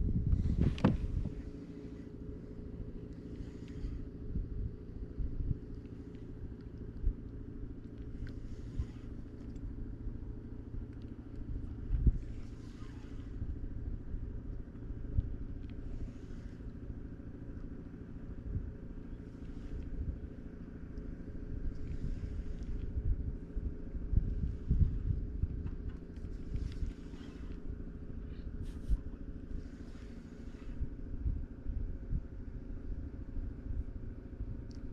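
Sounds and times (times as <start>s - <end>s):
wind buffeting microphone: 0.0s - 17.4s, 18.2s - 34.9s
soft hissing swish: 28.6s - 31.0s.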